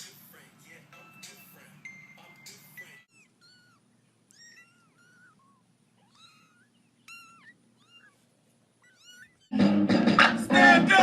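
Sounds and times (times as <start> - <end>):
cat mewing: 3.0 - 9.5.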